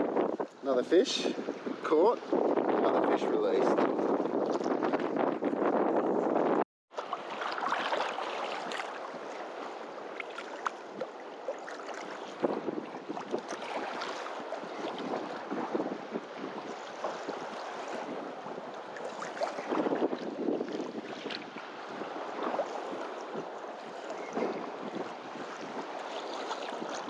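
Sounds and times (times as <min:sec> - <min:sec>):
small waves washing on beach: 0:00.0 - 0:05.5, 0:06.9 - 0:27.0
wind buffeting microphone: 0:00.0 - 0:06.6, 0:08.6 - 0:27.0
light ticks and splashes: 0:07.0 - 0:12.5.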